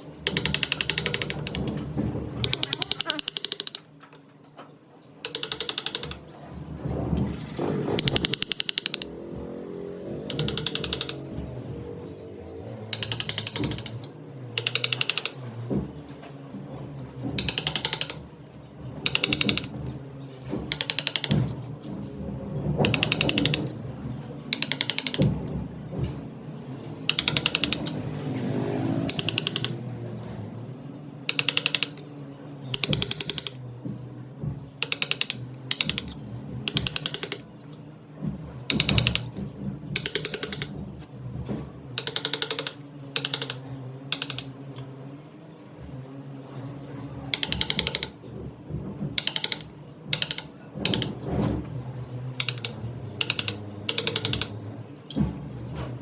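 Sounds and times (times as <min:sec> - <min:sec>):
turning tool clattering: 0:00.2 - 0:03.9, 0:05.3 - 0:09.5, 0:19.0 - 0:22.0, 0:22.7 - 0:28.3, 0:29.0 - 0:30.4, 0:31.3 - 0:33.6, 0:34.8 - 0:56.0
wood lathe running: 0:45.3 - 0:55.3.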